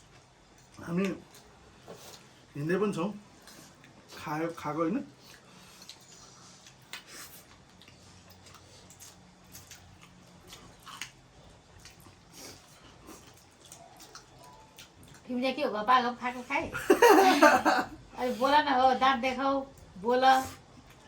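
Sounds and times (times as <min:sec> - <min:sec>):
person chewing noodles: 0:00.0 - 0:02.5, 0:05.1 - 0:15.3
small mouth clicks and smacks: 0:05.3 - 0:11.2.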